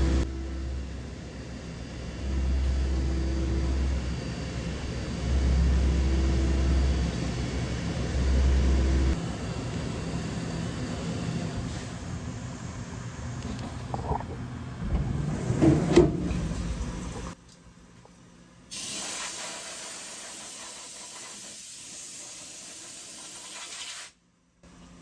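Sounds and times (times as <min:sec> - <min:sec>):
machine hum: 0:00.0 - 0:17.4
spraying hiss inside machine: 0:18.7 - 0:24.2.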